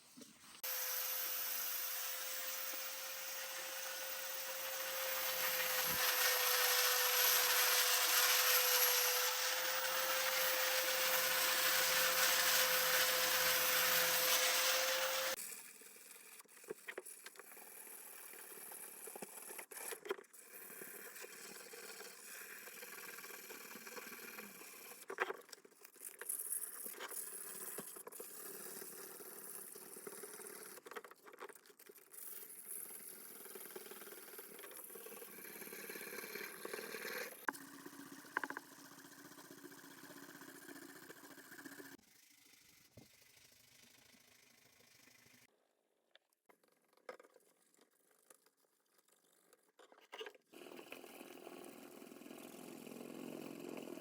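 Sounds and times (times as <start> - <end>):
power tool grinding steel: 0.6 - 15.4.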